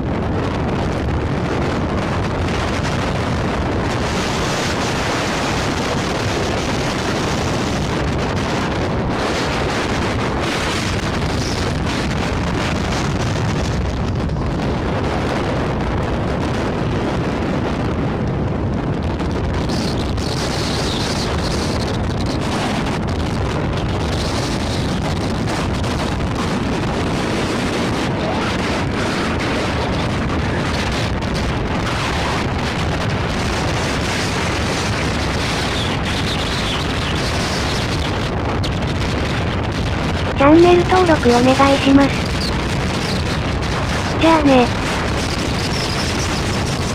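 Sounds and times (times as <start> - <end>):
wind buffeting microphone: 0.0 - 46.9
jet engines rumbling: 40.2 - 46.2.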